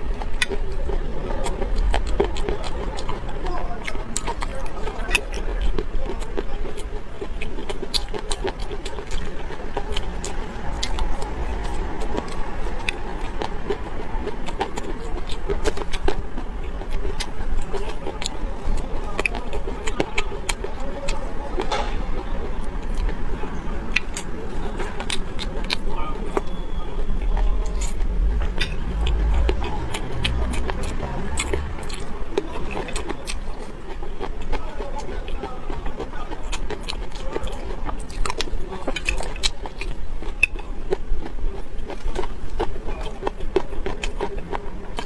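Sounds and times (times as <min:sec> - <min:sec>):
steady low rumble: 0:00.0 - 0:06.0, 0:08.2 - 0:19.0, 0:22.0 - 0:34.2
person chewing food: 0:00.0 - 0:45.0.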